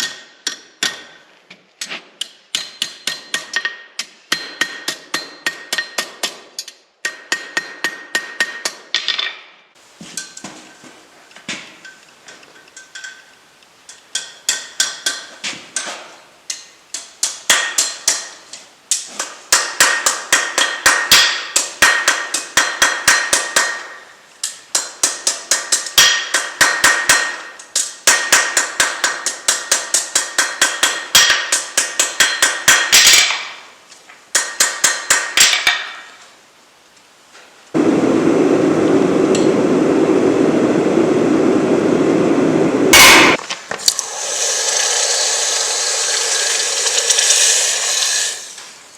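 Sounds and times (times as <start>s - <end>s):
hammer striking steel on anvil: 0.0s - 1.2s, 2.2s - 8.9s, 13.9s - 15.9s, 16.5s - 33.6s, 34.3s - 36.0s, 43.0s - 43.4s.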